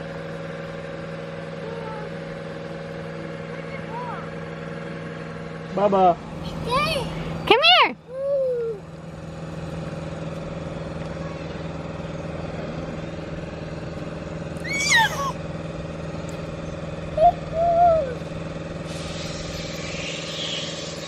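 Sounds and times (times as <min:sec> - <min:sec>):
small motor humming: 0:05.8 - 0:21.0
child squealing: 0:14.6 - 0:15.4, 0:17.2 - 0:18.2.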